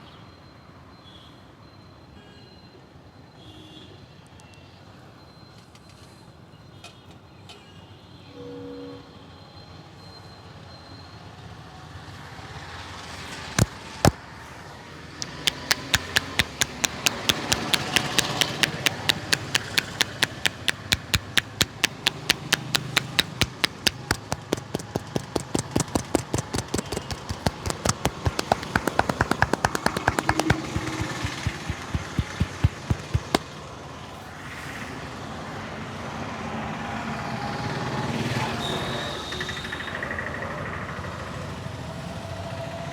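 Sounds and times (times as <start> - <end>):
hands patting a head: 15.5 - 33.5.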